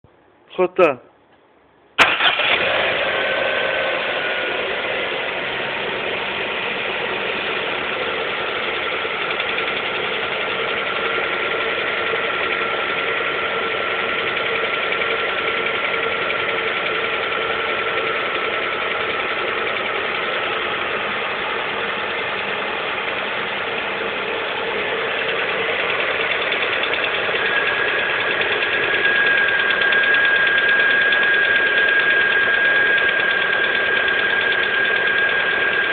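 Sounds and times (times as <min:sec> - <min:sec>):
car engine running: 0:02.0 - 0:35.9
engine knocking: 0:04.0 - 0:35.9
steady high whine: 0:20.8 - 0:35.9.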